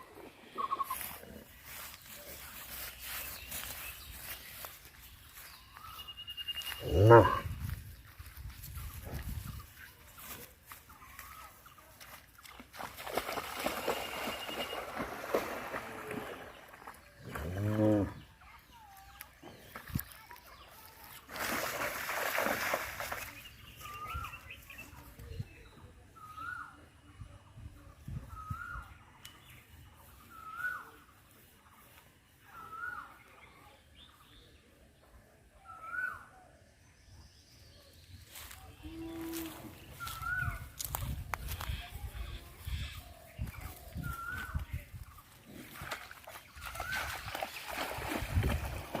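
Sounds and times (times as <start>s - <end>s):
faint bird chirps: 0.5s - 7.1s
wind rumble on microphone: 7.2s - 9.8s, 27.2s - 29.0s, 39.4s - 45.2s, 47.8s - 49.0s.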